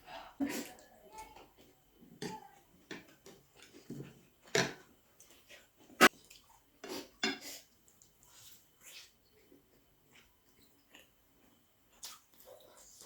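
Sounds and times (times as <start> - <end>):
wet mouth noises and chewing: 7.7 - 13.0.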